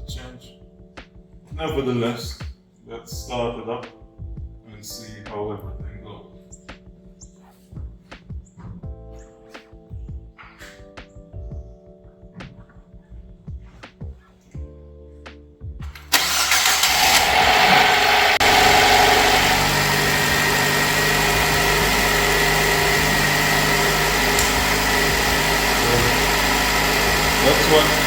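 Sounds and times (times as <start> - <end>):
car engine starting and idling: 16.0 - 28.0.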